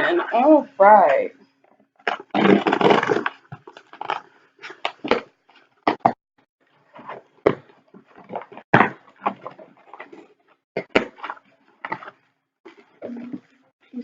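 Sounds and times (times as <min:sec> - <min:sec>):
cardboard packaging being opened: 0:02.1 - 0:05.2.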